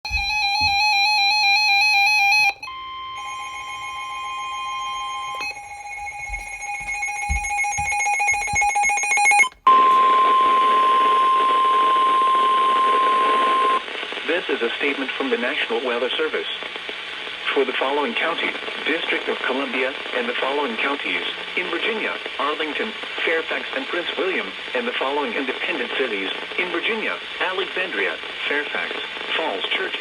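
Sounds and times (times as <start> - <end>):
radio hiss: 12.5 - 30.0.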